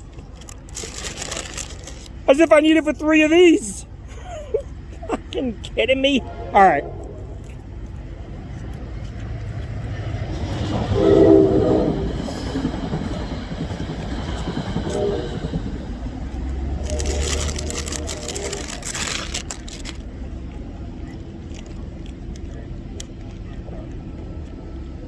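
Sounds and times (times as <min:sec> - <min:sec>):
low rumble: 0:05.7 - 0:08.6, 0:12.9 - 0:20.5
multi-tone horn: 0:06.1 - 0:07.6, 0:10.7 - 0:12.2, 0:14.8 - 0:15.9, 0:16.7 - 0:19.4.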